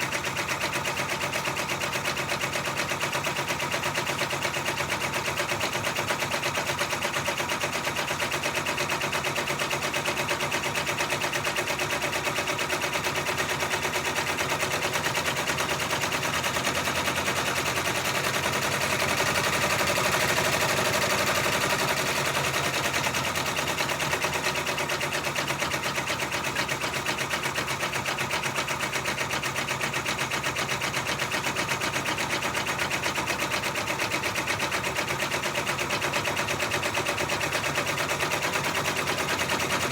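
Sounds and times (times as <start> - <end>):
embroidery machine stitching: 9.4 - 39.9.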